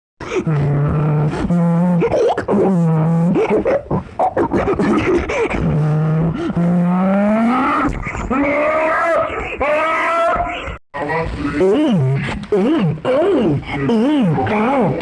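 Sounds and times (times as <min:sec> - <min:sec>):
person imitating car engine: 0:00.2 - 0:10.1, 0:11.5 - 0:15.0.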